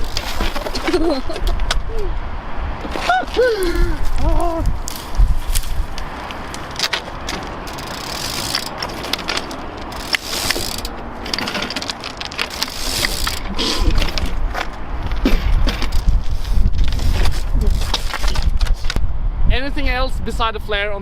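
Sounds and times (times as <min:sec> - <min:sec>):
tyre rolling noise: 0:00.0 - 0:01.9, 0:02.7 - 0:19.0
bike hub ratchet clicking: 0:06.4 - 0:14.2.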